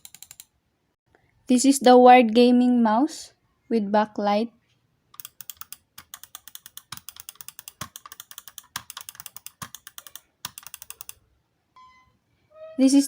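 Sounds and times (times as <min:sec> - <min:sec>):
mouse clicking rapidly: 0:00.0 - 0:00.5, 0:05.1 - 0:11.2.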